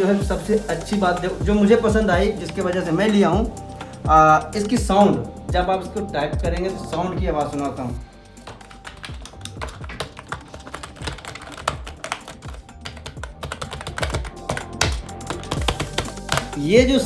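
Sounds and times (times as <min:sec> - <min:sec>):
fast keyboard typing: 0:08.4 - 0:17.0.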